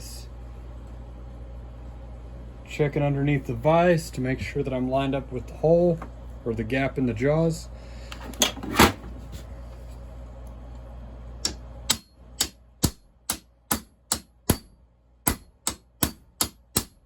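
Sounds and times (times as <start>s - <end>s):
hammer striking steel: 11.4s - 17.0s.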